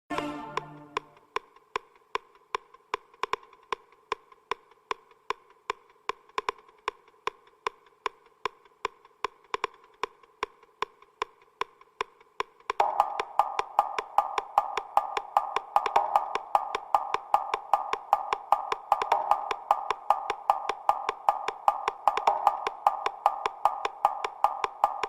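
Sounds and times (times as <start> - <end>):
synth layer: 0.1 - 1.3
woody percussion clicks: 0.1 - 25.0.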